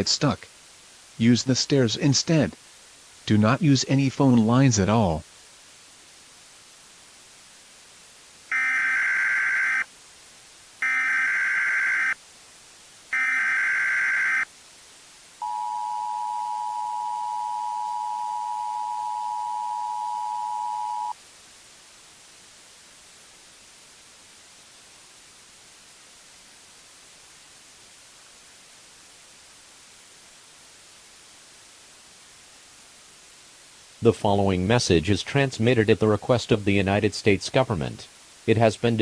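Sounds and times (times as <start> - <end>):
steady hiss: 0.0 - 39.0
two-tone attention signal: 15.4 - 21.1.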